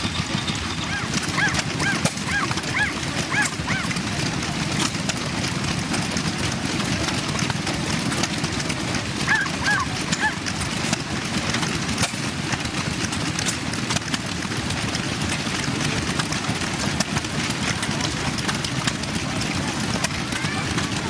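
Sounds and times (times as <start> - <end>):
engine rumbling: 0.0 - 21.0
dog yipping: 0.8 - 4.0, 9.3 - 10.4.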